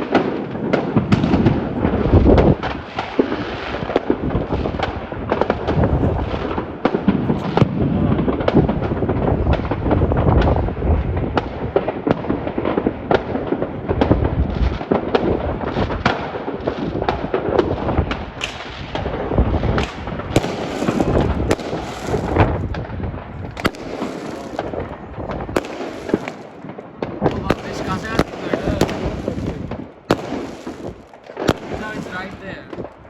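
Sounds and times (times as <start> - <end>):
fireworks bangs and booms: 0.0 - 33.0
crackling firework shells: 11.4 - 33.0.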